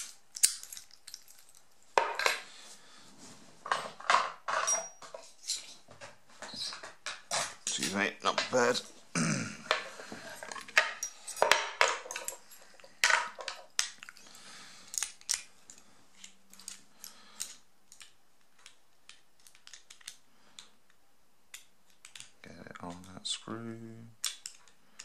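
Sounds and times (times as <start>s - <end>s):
padlock and tools clinking: 0.0s - 2.3s, 4.6s - 5.1s.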